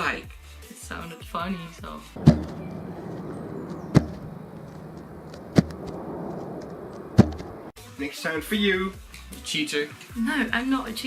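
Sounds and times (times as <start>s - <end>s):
longboard thudding onto grass: 2.2s - 7.6s
steady background noise: 2.2s - 7.7s.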